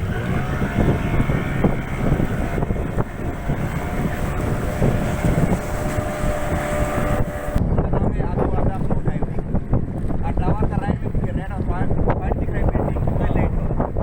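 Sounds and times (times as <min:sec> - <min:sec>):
motor boat engine running: 0:00.0 - 0:14.0
wind buffeting microphone: 0:00.0 - 0:14.0.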